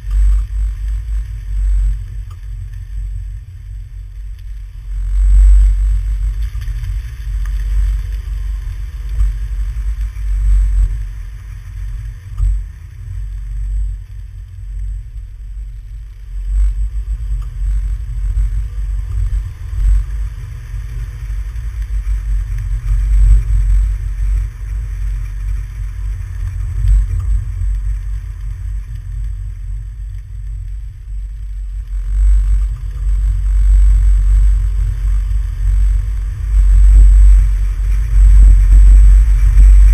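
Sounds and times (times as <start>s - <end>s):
muffled car driving rumble: 0.0s - 39.9s
wind buffeting: 32.0s - 39.9s.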